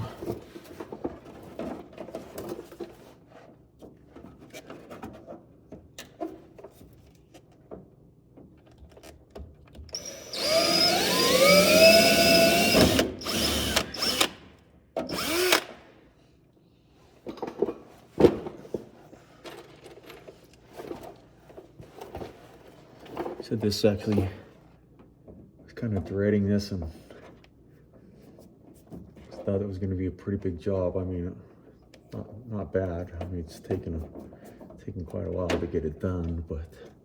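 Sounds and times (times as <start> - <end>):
power drill running: 10.0 - 15.9.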